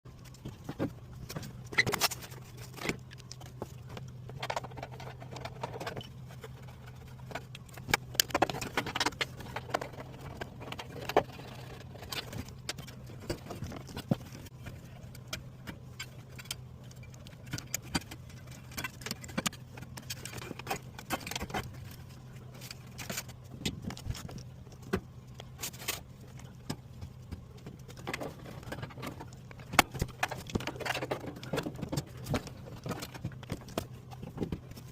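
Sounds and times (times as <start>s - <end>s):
steady low hum: 0.1s - 34.9s.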